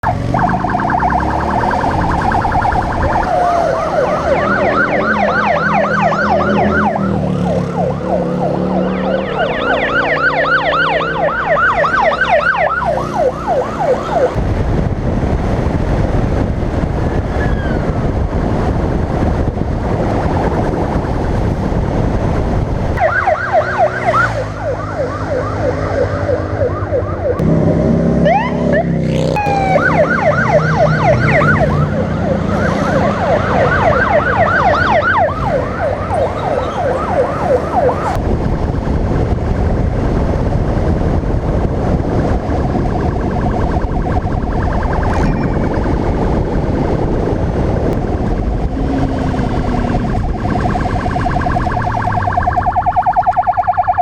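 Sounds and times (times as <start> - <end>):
yelping siren: 0.0 - 14.4, 17.1 - 18.0, 23.0 - 38.2, 42.3 - 46.7, 48.0 - 54.0
motorcycle engines running: 0.0 - 53.2.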